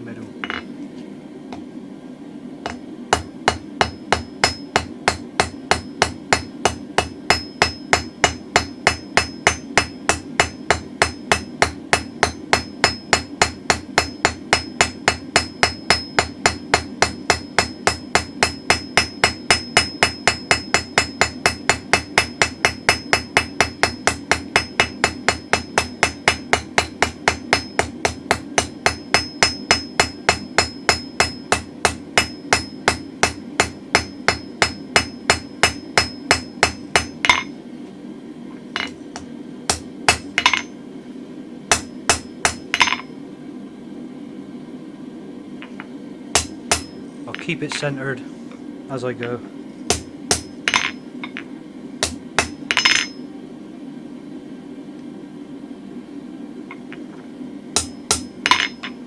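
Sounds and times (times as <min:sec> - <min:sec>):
steady low hum: 0:00.0 - 0:59.0
hammer striking steel on anvil: 0:00.4 - 0:00.7, 0:02.7 - 0:37.6, 0:38.8 - 0:40.8, 0:41.7 - 0:43.1, 0:46.4 - 0:47.8, 0:49.9 - 0:53.2, 0:57.8 - 0:59.0.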